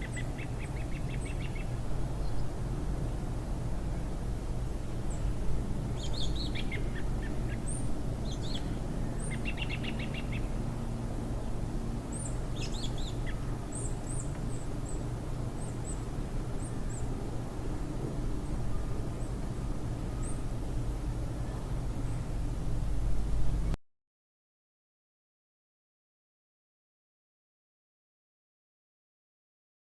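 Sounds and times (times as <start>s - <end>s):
small birds chirping: 0.0s - 2.5s, 5.9s - 10.6s, 12.1s - 17.1s
low rushing background: 13.5s - 23.8s.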